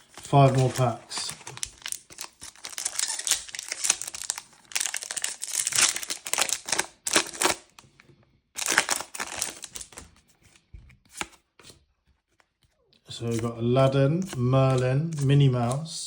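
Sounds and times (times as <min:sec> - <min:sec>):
foil wrapper crinkling: 0:00.0 - 0:07.8, 0:08.6 - 0:10.1.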